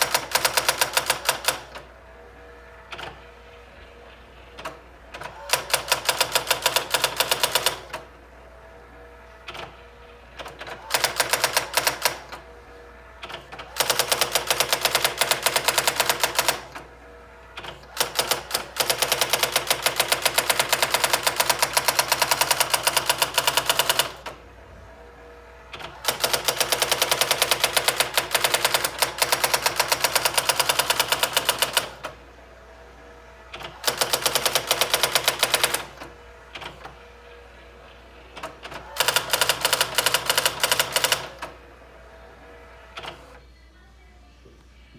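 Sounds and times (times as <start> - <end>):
electronic typewriter striking: 0.0 - 1.9, 4.5 - 8.1, 10.4 - 12.5, 13.2 - 16.9, 17.6 - 24.4, 25.7 - 32.2, 33.5 - 37.0, 38.4 - 41.6.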